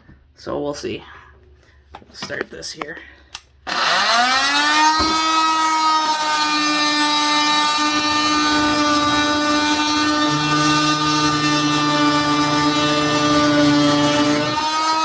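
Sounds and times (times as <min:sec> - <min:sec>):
multi-tool motor whine: 0:03.7 - 0:15.0.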